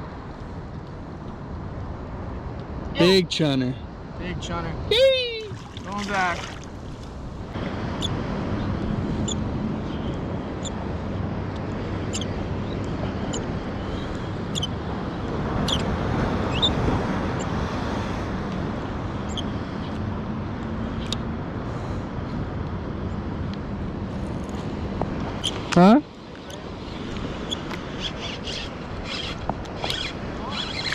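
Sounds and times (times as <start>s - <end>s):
kayak moving through water: 4.9s - 7.8s.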